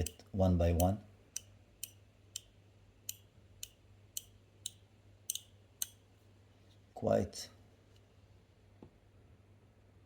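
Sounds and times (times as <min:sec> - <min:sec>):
metal fidget slider clicking: 0:03.1 - 0:06.0.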